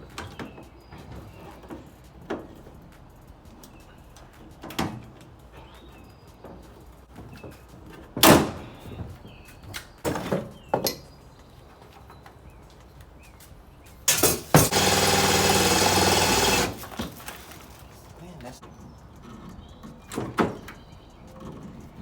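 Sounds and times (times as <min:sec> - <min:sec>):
metal knocks and clanks: 0:14.1 - 0:15.0
power drill running: 0:14.1 - 0:17.0.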